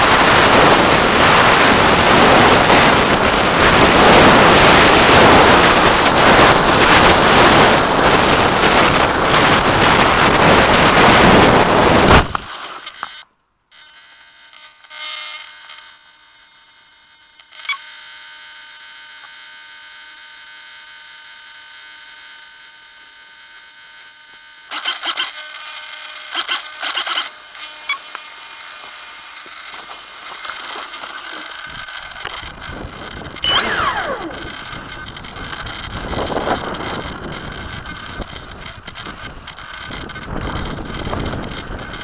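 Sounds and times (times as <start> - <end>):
motor rough rumble: 0.0 - 12.4, 28.5 - 42.0
sharp clicks: 24.7 - 25.3, 26.3 - 27.3
motor whining: 24.7 - 42.0.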